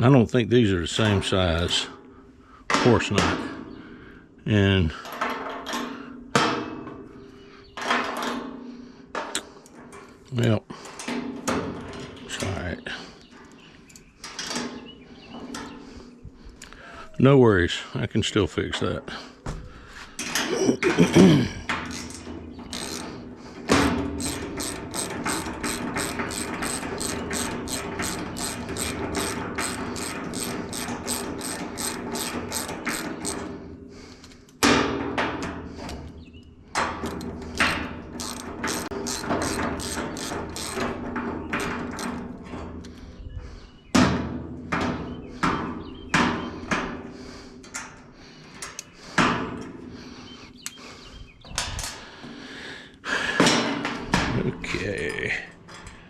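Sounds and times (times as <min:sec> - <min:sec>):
ratchet wrench clicking: 0:21.8 - 0:33.5, 0:37.6 - 0:41.0, 0:41.6 - 0:42.2.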